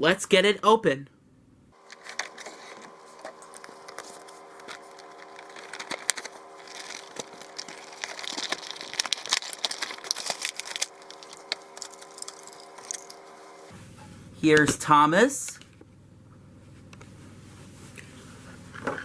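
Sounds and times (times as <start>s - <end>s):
packaging crinkling: 1.8s - 13.7s
scraping: 1.8s - 13.7s.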